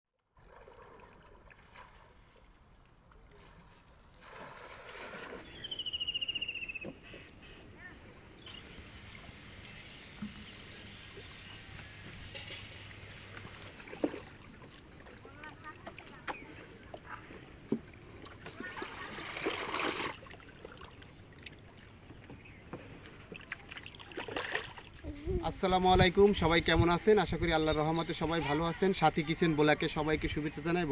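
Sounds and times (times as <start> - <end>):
water splashing around a boat: 0.3 - 25.4
bird trilling: 5.4 - 7.3
rushing splash: 18.6 - 20.5.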